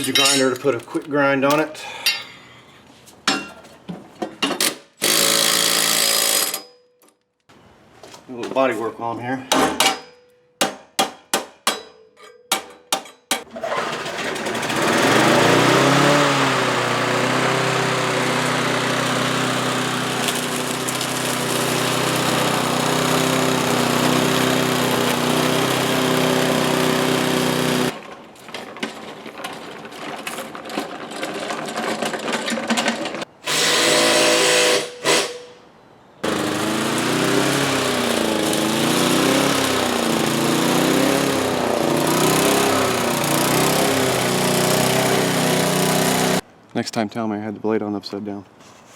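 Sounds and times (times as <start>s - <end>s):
lawn mower engine running: 13.5s - 33.3s, 36.2s - 46.4s.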